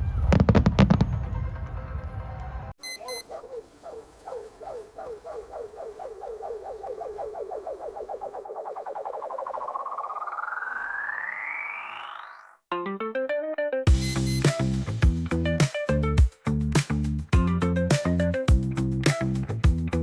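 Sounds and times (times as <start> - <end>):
fireworks booming: 0.0 - 2.7
rising chirping sound effect: 2.8 - 12.6.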